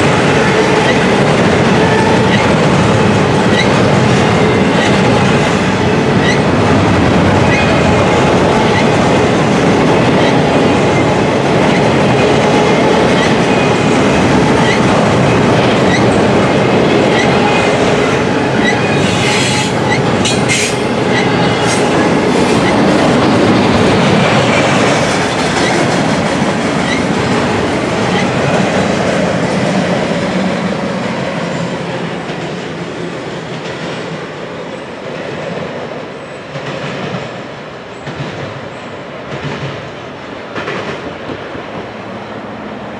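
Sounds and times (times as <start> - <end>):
train wheels clattering over rail joints: 0.0 - 34.3.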